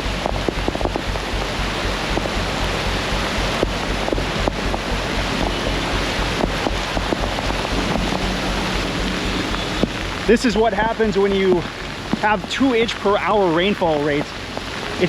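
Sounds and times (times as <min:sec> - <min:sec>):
floodwater rushing: 0:00.0 - 0:15.0
heavy rain pouring: 0:00.0 - 0:15.0
wind buffeting microphone: 0:00.0 - 0:15.0.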